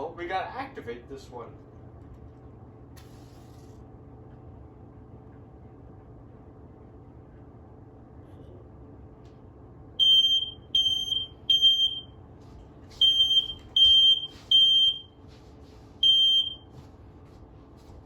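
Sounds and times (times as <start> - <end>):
smoke alarm beeping: 10.0 - 12.2, 13.0 - 15.2, 16.0 - 16.8.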